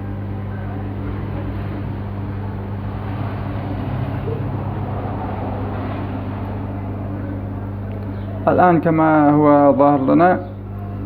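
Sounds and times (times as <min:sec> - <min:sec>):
faint higher buzz: 0:00.0 - 0:08.9
steady low hum: 0:00.0 - 0:11.0.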